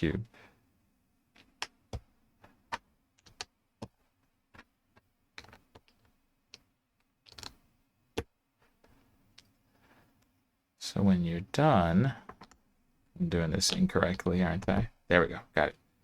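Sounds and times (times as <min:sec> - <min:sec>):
plastic bricks clicking: 0:04.6 - 0:06.6, 0:07.2 - 0:07.6.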